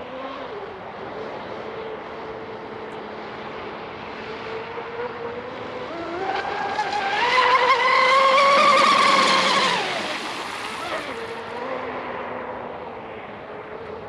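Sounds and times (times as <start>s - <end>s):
electric boat motor whine: 0.0s - 12.7s.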